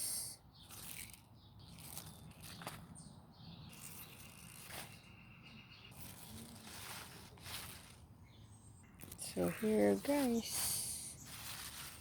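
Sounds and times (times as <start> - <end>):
leaves rustling and tearing: 0.6 - 3.0, 3.6 - 5.1, 5.9 - 8.2, 9.0 - 12.0.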